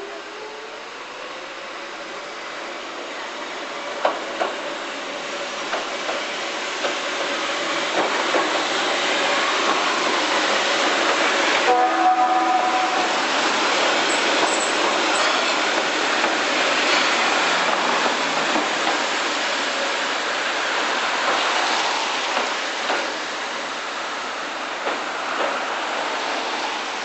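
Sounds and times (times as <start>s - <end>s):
electric train approaching: 0.0s - 27.0s
train wheels clicking over rail joints: 4.0s - 4.8s, 5.6s - 9.0s, 13.5s - 19.4s, 22.2s - 23.4s, 24.7s - 25.8s
train horn blast: 11.6s - 13.2s.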